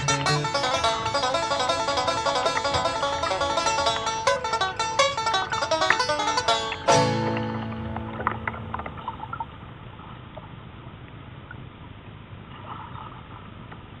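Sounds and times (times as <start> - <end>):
river water flowing: 0.0 - 11.1
small water splashes and drips: 0.0 - 11.7
background music chord: 6.8 - 8.9.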